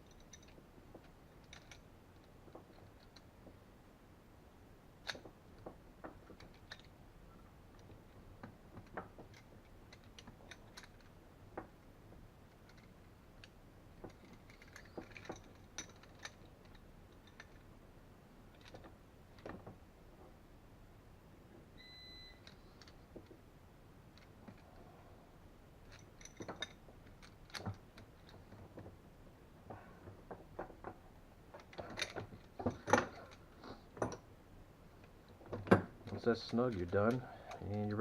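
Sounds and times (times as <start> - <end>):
metal hose fittings clicking: 35.0 - 38.0.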